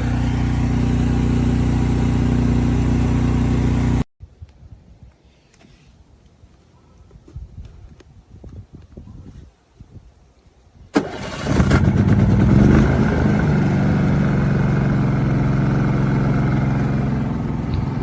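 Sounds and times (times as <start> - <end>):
generator engine starting and running: 0.0 - 4.1, 11.0 - 18.0.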